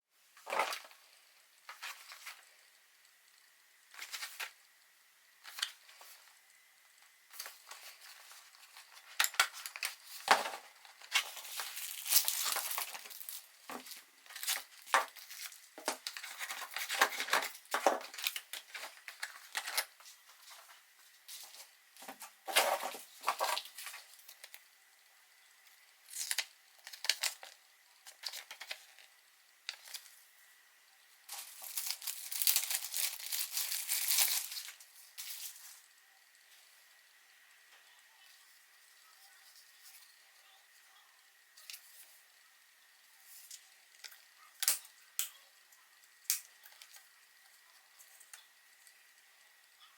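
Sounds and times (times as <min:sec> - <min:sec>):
cardboard and plastic rustling: 0:00.4 - 0:01.1, 0:03.9 - 0:04.6, 0:07.3 - 0:24.6, 0:26.1 - 0:29.1, 0:29.7 - 0:30.2, 0:31.3 - 0:35.9.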